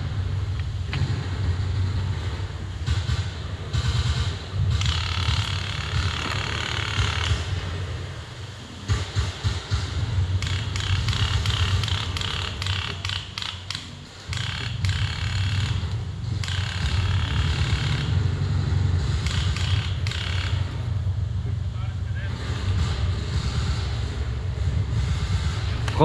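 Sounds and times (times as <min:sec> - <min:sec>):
steady low rumble: 0:00.0 - 0:26.0
irregular clicks: 0:10.4 - 0:18.2, 0:19.1 - 0:20.7.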